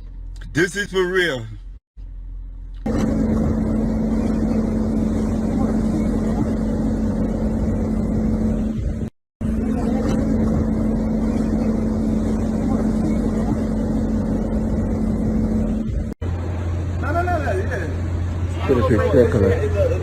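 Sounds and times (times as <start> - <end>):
motor humming steadily: 2.0 - 20.0.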